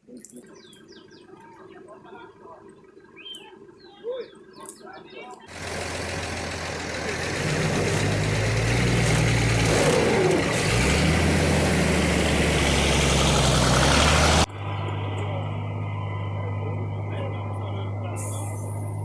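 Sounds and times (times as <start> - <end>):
road and wind noise: 5.5 - 19.0
vehicle engine running: 5.5 - 19.0.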